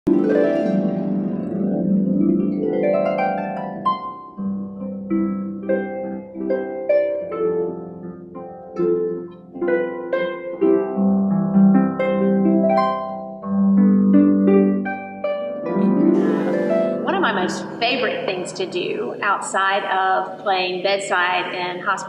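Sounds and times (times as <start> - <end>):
harp playing slow melody: 0.1 - 18.8
sustained low bass notes: 15.7 - 19.4.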